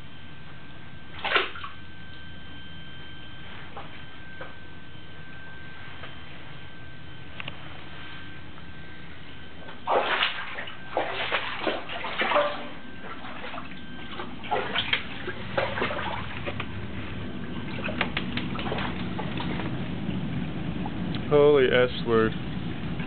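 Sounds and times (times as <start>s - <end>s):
floodwater sloshing and splashing: 1.1s - 1.9s, 9.6s - 21.0s.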